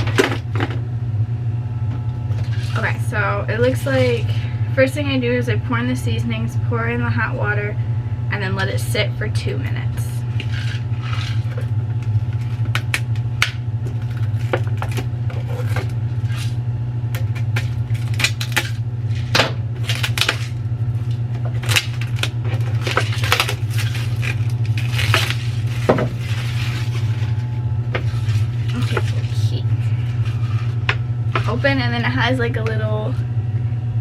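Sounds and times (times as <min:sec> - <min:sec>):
steady low hum: 0:00.0 - 0:34.0
packaging crinkling: 0:10.4 - 0:16.6, 0:17.2 - 0:30.8.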